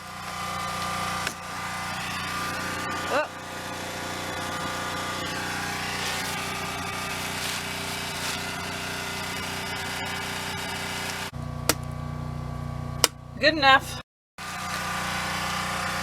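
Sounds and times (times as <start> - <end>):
small engine running: 0.0 - 13.6, 14.4 - 16.0
sharp click: 13.0 - 13.2.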